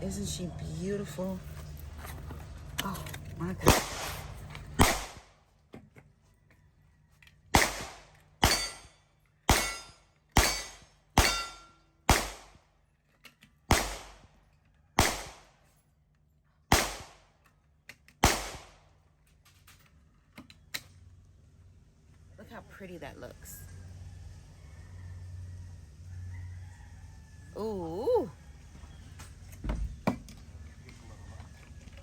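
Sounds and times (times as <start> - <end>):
gunshots with echo: 3.6 - 5.2, 7.6 - 8.8, 9.5 - 12.5, 13.7 - 14.2, 15.0 - 15.5, 16.7 - 17.2, 18.2 - 18.8.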